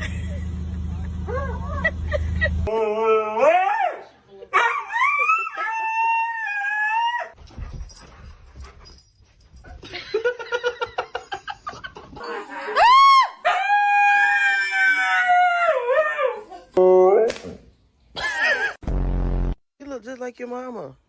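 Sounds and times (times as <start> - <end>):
dog howling: 2.7 - 4.0, 12.4 - 16.6.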